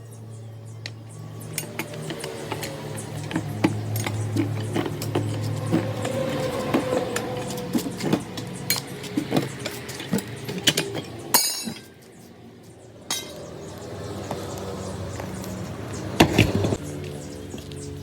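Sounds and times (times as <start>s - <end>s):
hand tools clinking and knocking: 1.3s - 13.5s.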